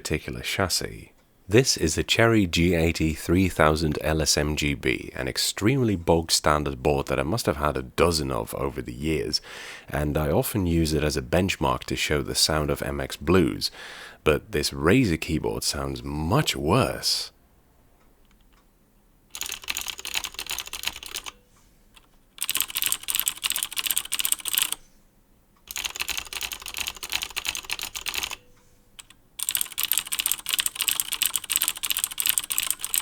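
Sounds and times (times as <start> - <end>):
mechanical keyboard typing: 19.3 - 21.4, 22.0 - 24.8, 25.7 - 28.4, 29.0 - 33.0.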